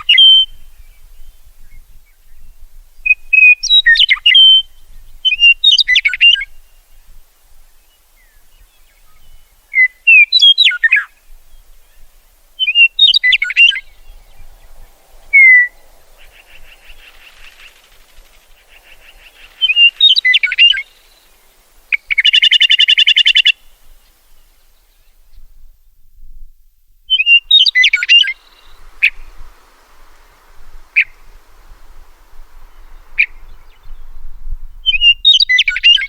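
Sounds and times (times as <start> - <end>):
meadowlark whistled song: 0.0 - 26.4, 27.0 - 36.0
buzzy rapid bird chatter: 16.2 - 21.2.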